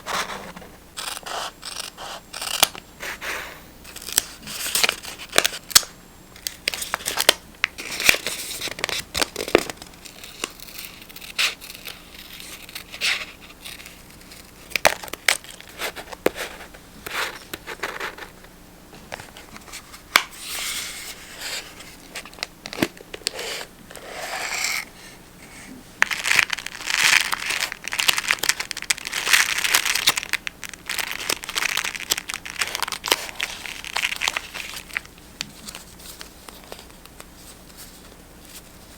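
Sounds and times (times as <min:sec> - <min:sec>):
paper crinkling and rustling: 0:06.4 - 0:23.3, 0:26.0 - 0:38.9.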